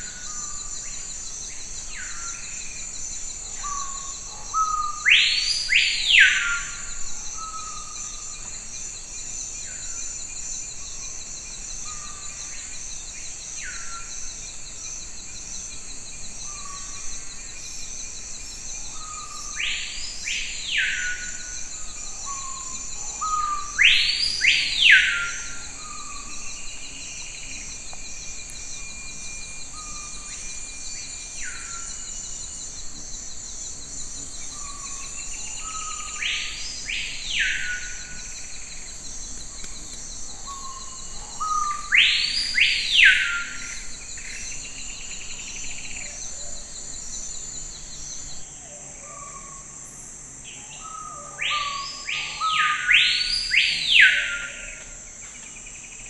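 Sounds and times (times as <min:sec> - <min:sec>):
high insect drone: 0:00.0 - 0:56.0.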